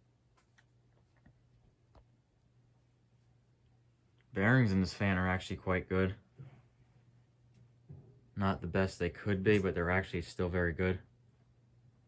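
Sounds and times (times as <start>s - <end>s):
ceiling fan low hum: 0.0s - 12.0s.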